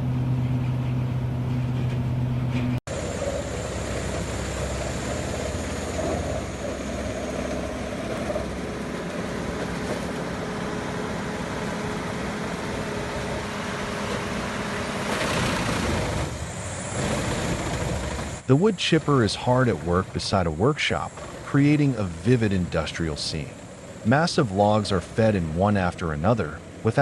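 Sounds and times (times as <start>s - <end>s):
wood shredder running: 2.9s - 18.5s.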